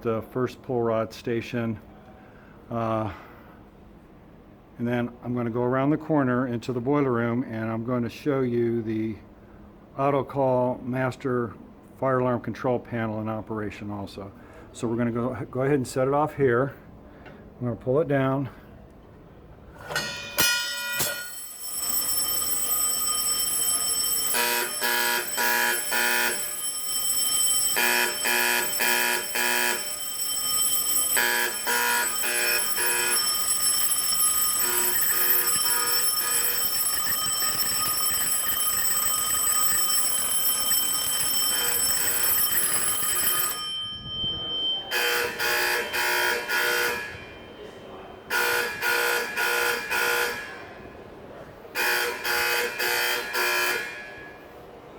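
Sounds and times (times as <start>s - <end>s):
fire alarm pull station click: 19.9s - 43.7s
pulsing fire alarm horns: 20.8s - 47.6s, 48.2s - 50.7s, 51.7s - 54.5s
steady buzzing tone: 21.0s - 47.6s.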